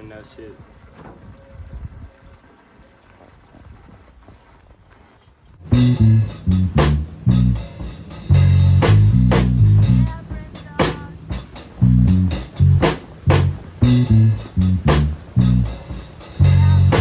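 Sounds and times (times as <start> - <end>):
rock band music: 5.7 - 17.0.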